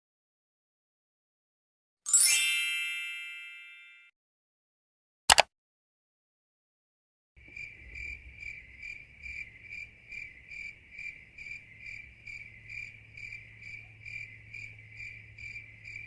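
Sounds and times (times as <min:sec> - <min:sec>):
crickets chirping: 0:07.4 - 0:16.0
faint low hum: 0:07.4 - 0:16.0.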